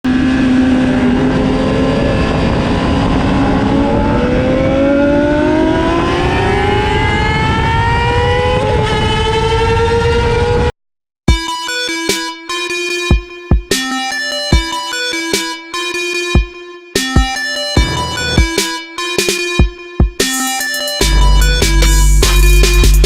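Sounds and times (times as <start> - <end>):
motorcycle engine revving: 0.1 - 10.7, 17.8 - 18.8.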